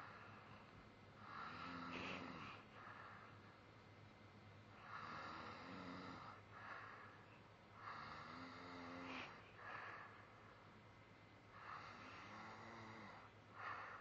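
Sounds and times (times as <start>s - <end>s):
quiet snoring: 1.2s - 3.5s, 4.7s - 10.4s, 11.5s - 14.0s.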